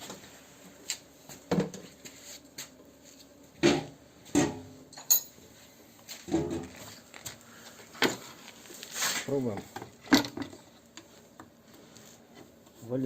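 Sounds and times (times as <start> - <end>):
hand tools clinking on metal: 5.0 - 5.4.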